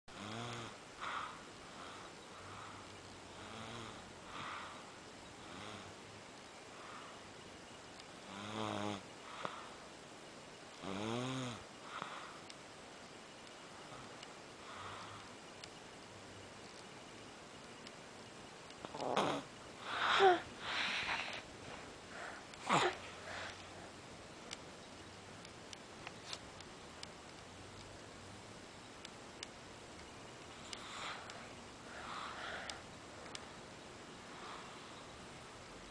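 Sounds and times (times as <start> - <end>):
child snoring: 0.1 - 2.8, 3.4 - 4.8, 8.3 - 9.5, 10.8 - 12.1, 18.8 - 21.4, 22.2 - 23.5.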